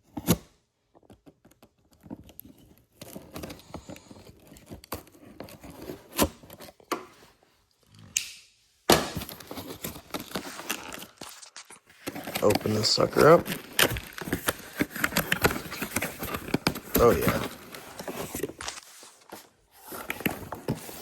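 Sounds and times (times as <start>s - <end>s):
packaging rustling: 9.1s - 21.0s
packaging being torn open: 9.3s - 18.9s
scrapes: 9.3s - 21.0s.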